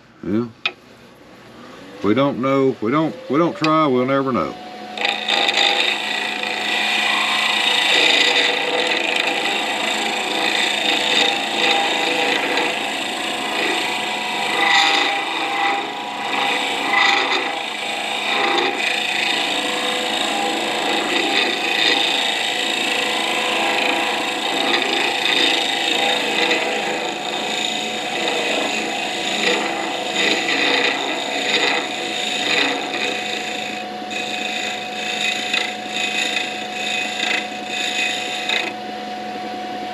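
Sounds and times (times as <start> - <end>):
wood lathe motor hum: 2.0 - 39.7
tool scraping spinning wood: 4.9 - 38.8.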